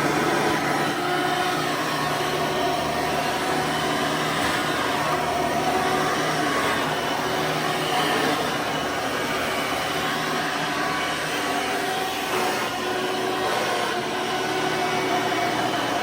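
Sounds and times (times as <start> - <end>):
vacuum cleaner running: 0.0 - 16.0.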